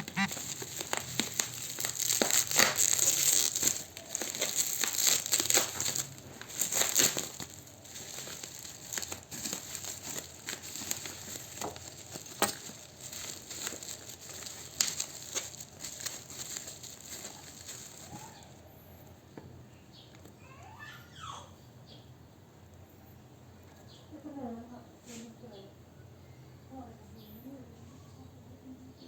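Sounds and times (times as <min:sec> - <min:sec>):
plastic packaging crinkling: 0:00.0 - 0:18.6.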